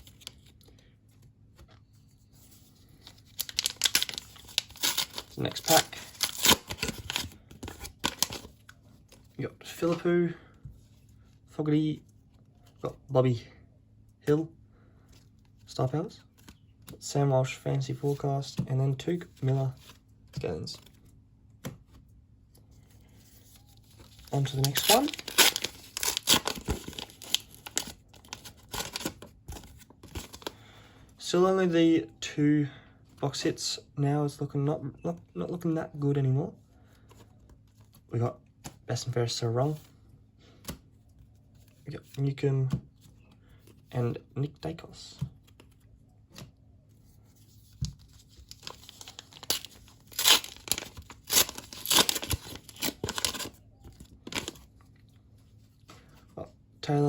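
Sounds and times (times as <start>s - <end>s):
plastic wrapper tearing and crinkling: 3.3s - 8.5s, 24.1s - 29.2s, 48.4s - 54.6s.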